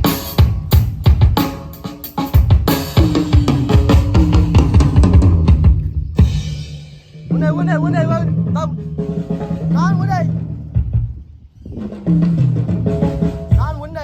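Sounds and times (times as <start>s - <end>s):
snare drum: 0.0s - 5.7s.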